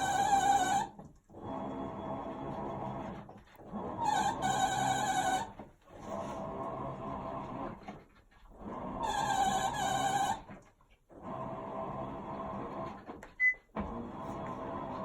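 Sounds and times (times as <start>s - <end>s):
washing machine high whining tone: 0.0s - 7.8s, 8.6s - 10.6s
washing machine churning rumble: 0.0s - 10.5s, 11.1s - 15.0s.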